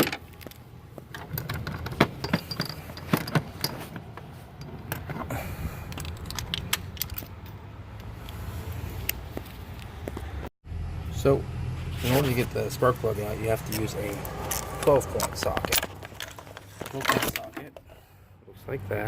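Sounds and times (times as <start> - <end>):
metal hand tools clinking: 1.4 - 4.0, 13.4 - 17.7.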